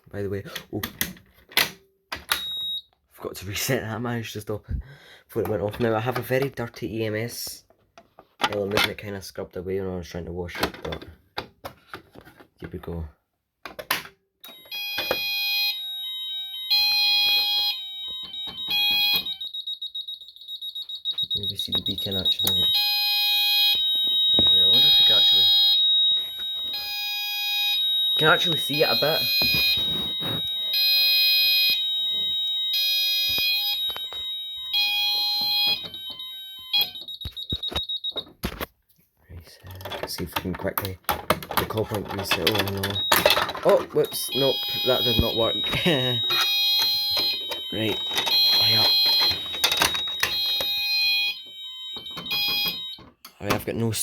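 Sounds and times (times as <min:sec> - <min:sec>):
high fast-warbling alarm tone: 0:14.5 - 0:38.0, 0:43.0 - 0:53.0
pulsing electronic alarm sounders: 0:14.5 - 0:38.2, 0:42.9 - 0:53.1.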